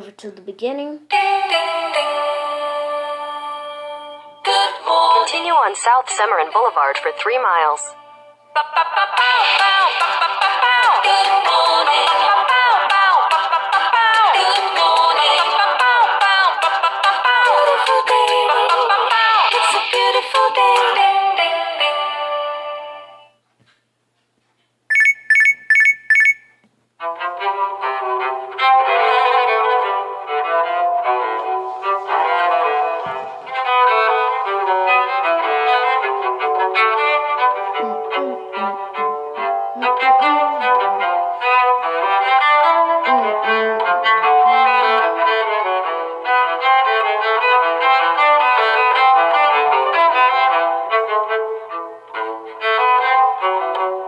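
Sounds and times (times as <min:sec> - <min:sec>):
high electronic beeps: 0:24.9 - 0:26.6
melodic instrumental alarm tone: 0:24.9 - 0:26.6.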